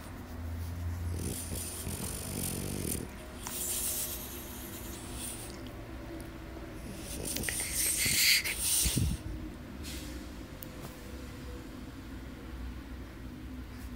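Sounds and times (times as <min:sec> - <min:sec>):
dog snoring: 0:01.0 - 0:04.2, 0:06.7 - 0:09.2.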